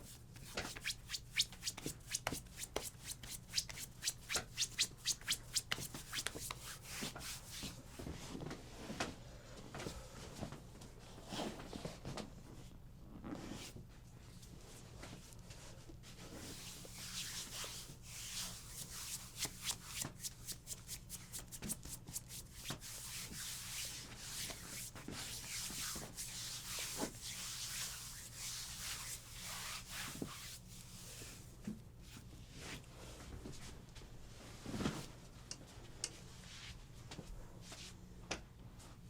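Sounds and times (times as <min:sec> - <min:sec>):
hands rubbing skin: 0:00.0 - 0:07.8, 0:16.5 - 0:31.4.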